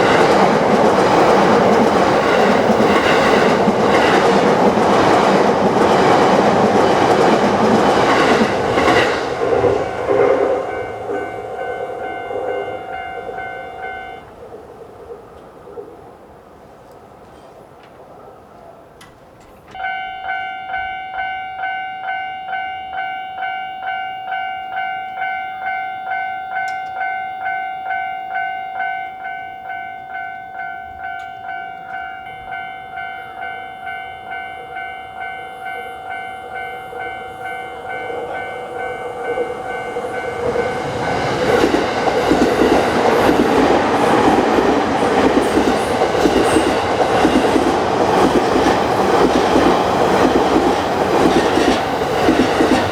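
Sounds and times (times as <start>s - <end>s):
train rumble and wheel clatter: 0.0s - 22.2s, 29.2s - 52.9s
level crossing warning bell ringing: 7.9s - 14.3s, 19.7s - 52.9s.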